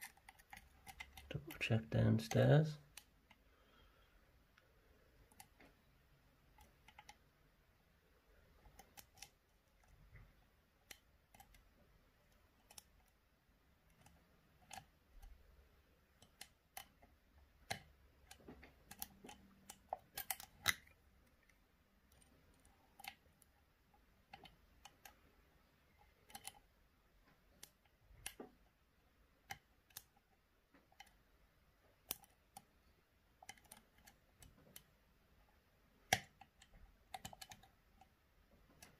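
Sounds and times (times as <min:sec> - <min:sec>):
lock pick clicking: 0:17.6 - 0:20.9.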